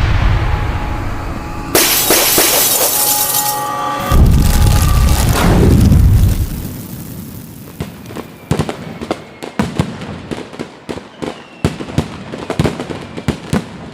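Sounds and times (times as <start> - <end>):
deep explosion boom: 0.0 - 2.3, 3.7 - 7.8.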